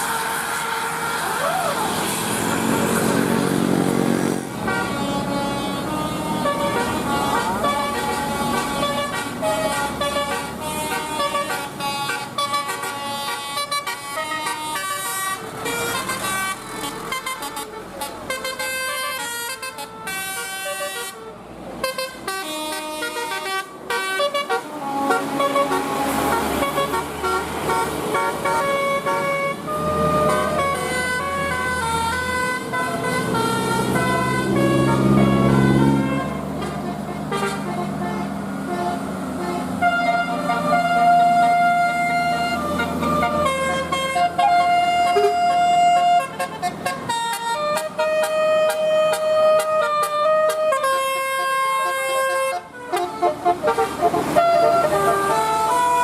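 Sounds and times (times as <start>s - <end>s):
multi-tone musical bus horn: 0.0s - 56.0s
deep horn blast: 21.9s - 46.6s.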